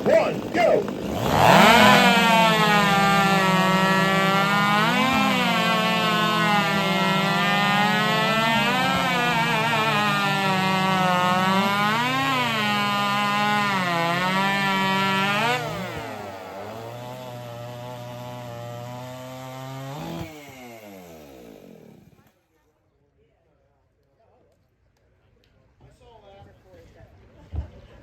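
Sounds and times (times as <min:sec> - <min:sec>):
chainsaws cutting log: 0:00.0 - 0:22.4
chainsaws running: 0:00.0 - 0:22.4.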